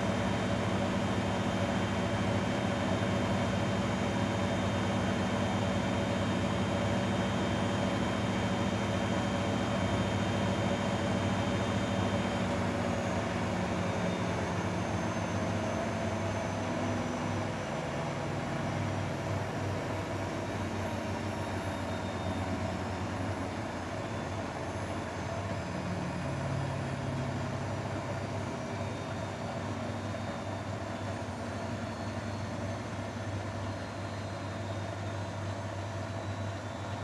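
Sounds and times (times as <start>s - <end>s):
washing machine motor humming: 0.0s - 21.8s.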